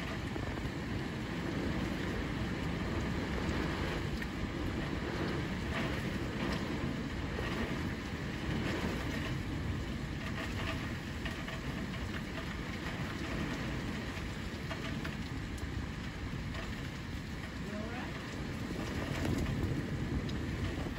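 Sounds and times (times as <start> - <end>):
heavy rain: 0.0 - 20.9
wind: 0.0 - 20.9.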